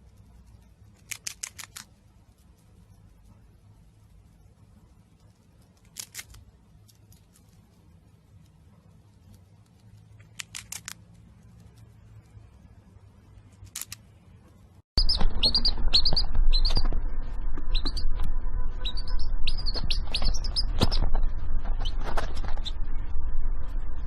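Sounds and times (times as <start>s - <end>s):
low background noise: 0.0s - 14.9s
bird chirping: 15.0s - 23.1s.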